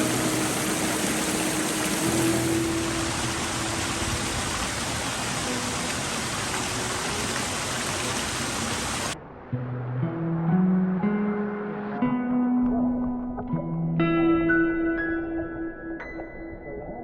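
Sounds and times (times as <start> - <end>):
soft background music: 0.0 - 7.8
waterfall rushing: 0.0 - 9.2.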